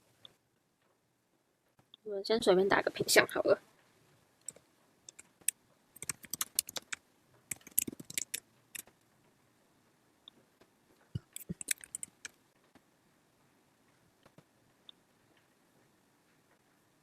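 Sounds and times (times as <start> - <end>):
keyboard typing clicks: 4.4 - 8.9, 11.2 - 12.4.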